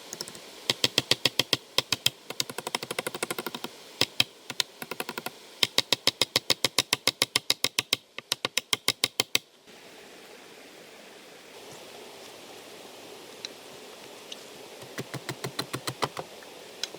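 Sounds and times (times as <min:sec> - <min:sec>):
soft steady hiss: 0:00.0 - 0:16.9
fast sharp taps: 0:14.8 - 0:16.3.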